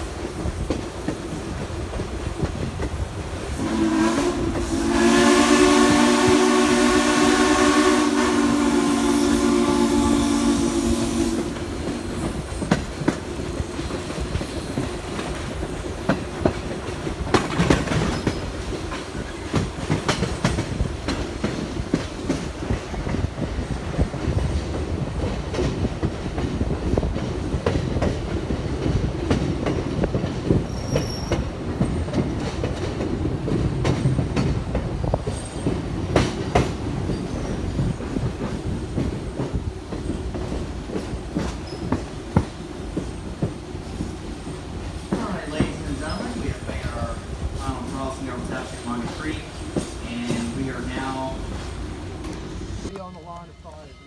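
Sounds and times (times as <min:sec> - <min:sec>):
train wheels rumbling over rail joints: 0:00.0 - 0:53.1
wheel squeals: 0:30.7 - 0:32.1.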